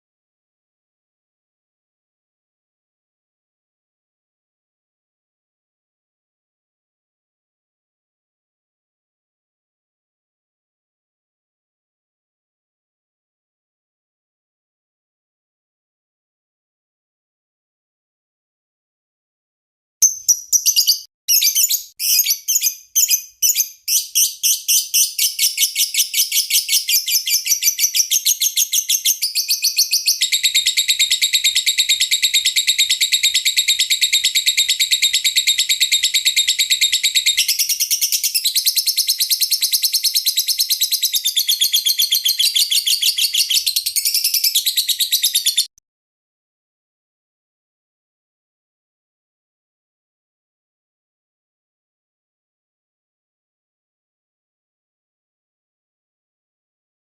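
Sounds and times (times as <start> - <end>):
lovebird chirping and trilling: 20.0 - 45.7.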